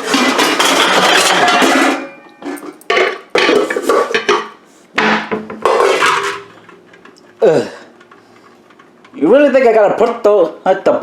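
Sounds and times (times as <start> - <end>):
pot clattering: 0.0 - 7.2.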